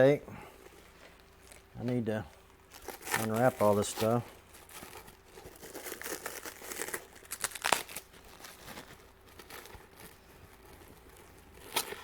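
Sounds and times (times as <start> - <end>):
packaging crinkling and tearing: 2.6 - 12.0.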